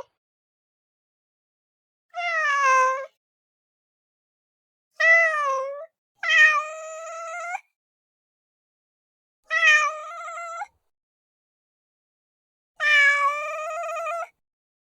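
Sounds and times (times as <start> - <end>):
cat meowing: 5.0 - 7.6, 9.5 - 10.7, 12.8 - 14.3.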